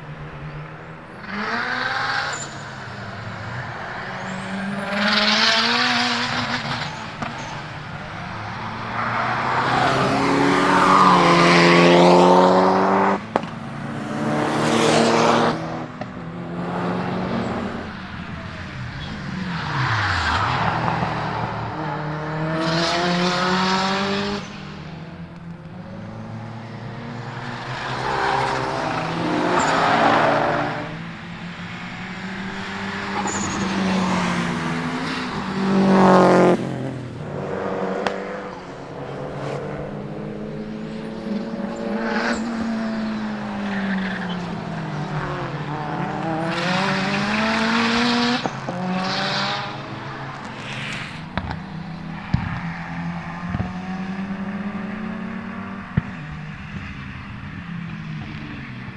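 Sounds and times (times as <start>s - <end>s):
race car engines revving past: 0.0s - 58.9s.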